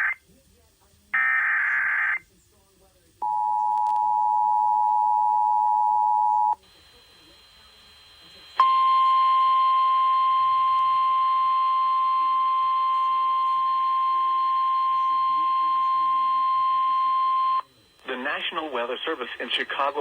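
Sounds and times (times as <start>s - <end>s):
steady warning alarm tone: 3.2s - 19.2s.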